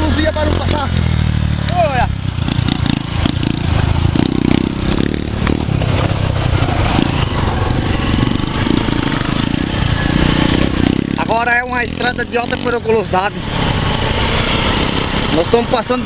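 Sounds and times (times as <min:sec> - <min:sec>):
motorcycle engine droning: 0:00.0 - 0:16.0.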